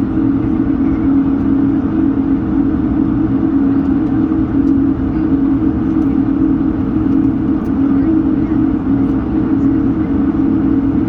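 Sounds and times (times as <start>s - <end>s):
jet engines cabin drone: 0.0s - 11.0s.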